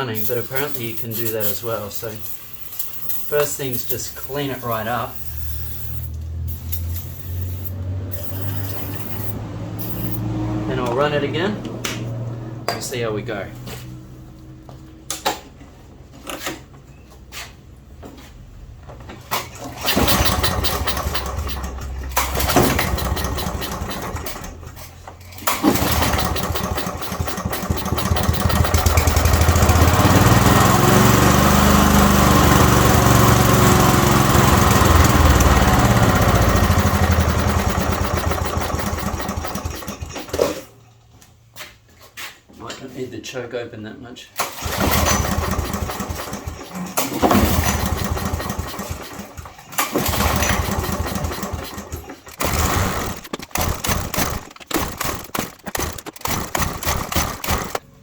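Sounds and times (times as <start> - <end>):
lawnmower engine running: 0.0 - 10.2, 19.5 - 40.6, 44.4 - 58.0.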